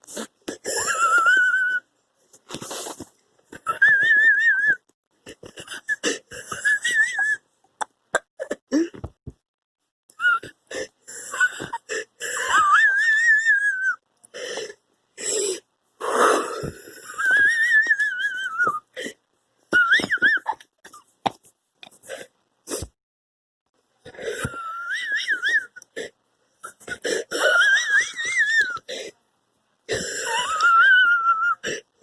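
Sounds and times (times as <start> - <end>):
person wheezing: 5.2 - 7.0.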